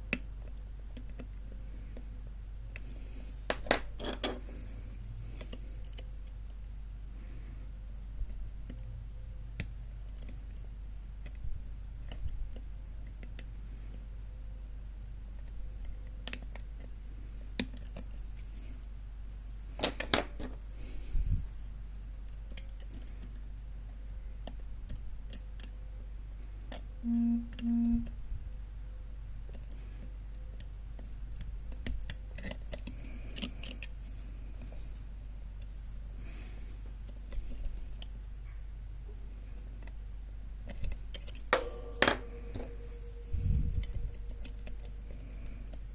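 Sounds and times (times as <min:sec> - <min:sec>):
steady low hum: 0:00.0 - 0:45.9
short low buzzing tone: 0:27.0 - 0:28.1.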